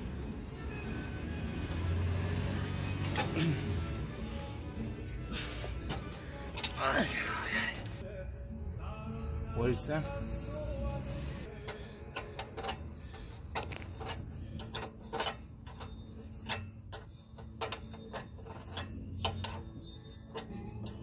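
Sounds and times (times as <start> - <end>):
hand tools clinking: 11.6 - 21.0.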